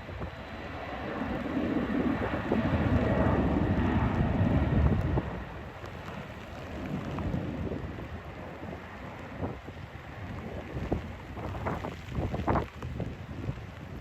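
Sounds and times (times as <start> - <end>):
jet engine rushing: 0.0 - 9.4.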